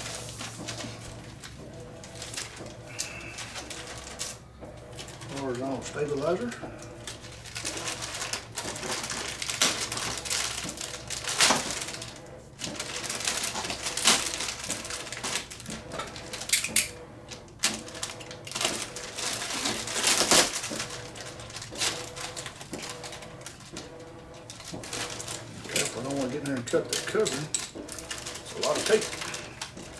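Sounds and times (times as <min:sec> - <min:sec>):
packaging crinkling and rustling: 0:00.0 - 0:29.9
tape clicks and snaps: 0:16.5 - 0:17.0.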